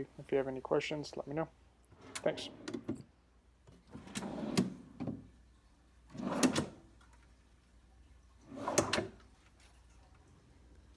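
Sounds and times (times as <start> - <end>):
wooden drawer sliding open and shut: 2.0 - 3.1, 3.9 - 5.3, 6.1 - 6.8, 8.5 - 9.2.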